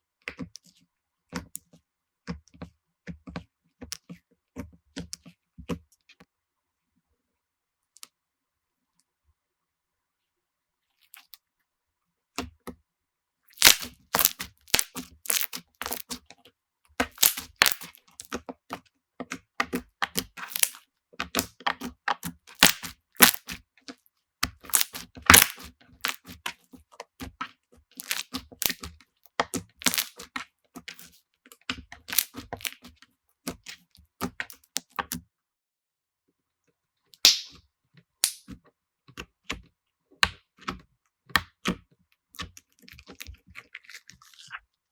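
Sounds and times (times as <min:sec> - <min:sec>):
slime crackling and popping: 0:13.5 - 0:16.2, 0:17.0 - 0:18.3, 0:20.1 - 0:23.6, 0:24.4 - 0:26.4, 0:28.0 - 0:28.9, 0:29.8 - 0:31.1, 0:32.1 - 0:32.9, 0:37.2 - 0:37.6, 0:38.2 - 0:38.4.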